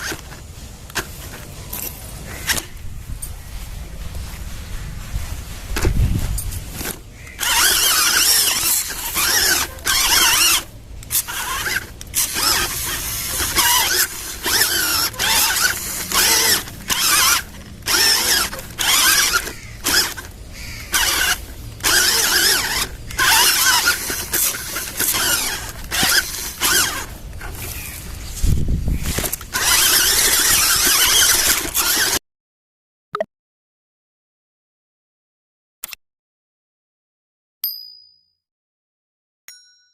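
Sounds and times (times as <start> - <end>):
small electric motor whirring: 6.8 - 32.2.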